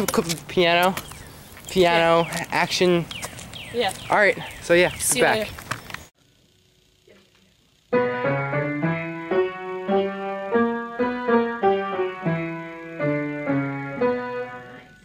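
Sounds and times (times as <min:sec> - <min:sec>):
piano broken chords: 0:07.9 - 0:15.0.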